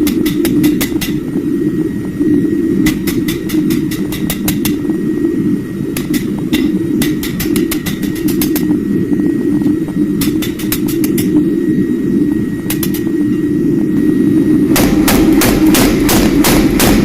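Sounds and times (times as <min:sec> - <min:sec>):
rapid metal strikes: 0:00.0 - 0:01.3, 0:02.8 - 0:04.8, 0:05.9 - 0:08.7, 0:10.2 - 0:11.3, 0:14.7 - 0:17.0
low mechanical roar: 0:00.0 - 0:17.0.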